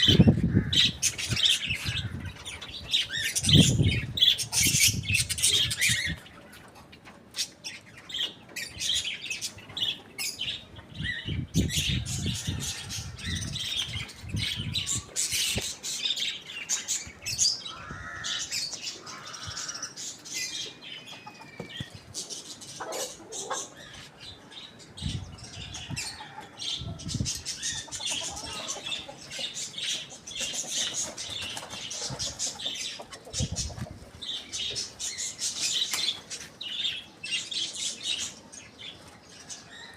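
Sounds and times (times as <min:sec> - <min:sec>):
chickens chirping: 0:00.0 - 0:39.9
chicken squawk: 0:22.8 - 0:23.8, 0:27.7 - 0:31.0.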